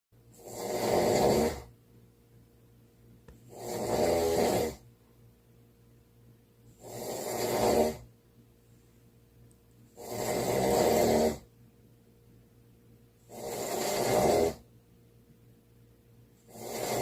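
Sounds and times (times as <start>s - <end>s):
person snoring: 0.3s - 1.7s, 3.5s - 4.8s, 6.7s - 8.1s, 9.9s - 11.5s, 13.2s - 14.7s, 16.4s - 17.0s.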